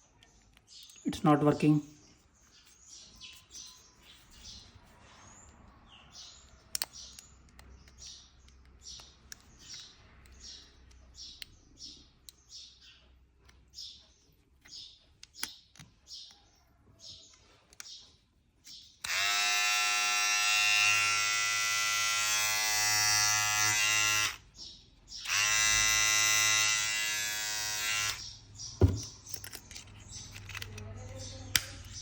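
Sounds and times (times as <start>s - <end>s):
handling clicks: 6.6s - 11.5s
electric trimmer buzzing: 19.0s - 24.4s, 25.2s - 29.1s.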